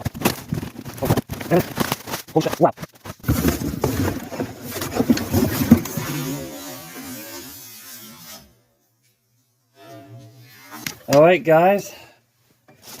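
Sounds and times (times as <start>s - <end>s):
packing rustling and scraping: 0.0s - 7.3s, 12.8s - 13.0s.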